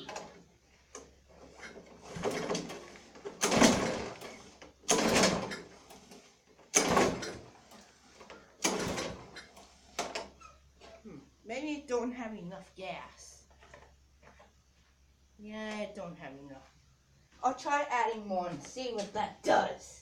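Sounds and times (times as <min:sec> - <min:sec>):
recoil starter cord pulled: 0:01.6 - 0:10.3.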